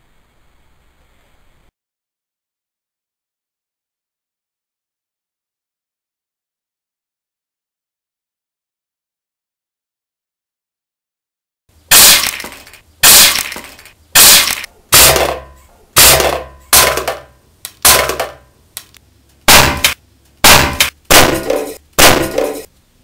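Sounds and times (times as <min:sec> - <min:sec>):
sharp crashing impacts: 0:19.5 - 0:22.7.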